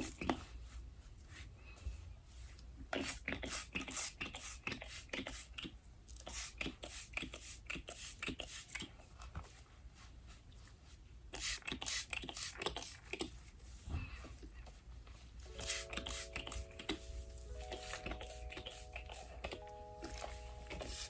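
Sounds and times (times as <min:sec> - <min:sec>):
hands rustling through braided hair: 0:00.0 - 0:03.0, 0:08.5 - 0:21.0.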